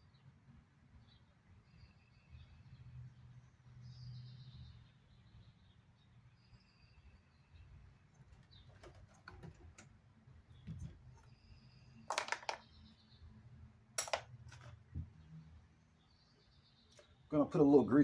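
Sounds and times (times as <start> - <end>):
small parts clattering: 12.1 - 12.8, 14.0 - 14.8.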